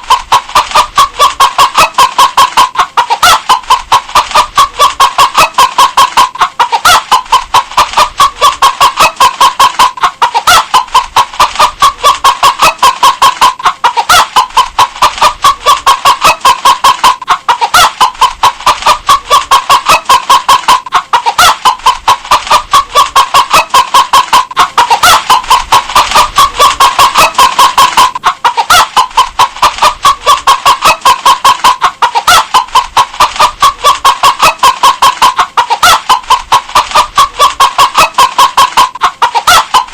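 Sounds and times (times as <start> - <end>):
hens clucking: 0.0 - 39.9.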